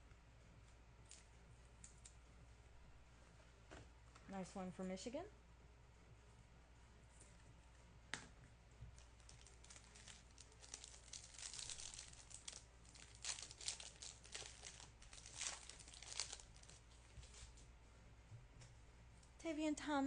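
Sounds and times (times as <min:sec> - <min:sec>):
wrapper crinkling and tearing: 0:09.0 - 0:17.5.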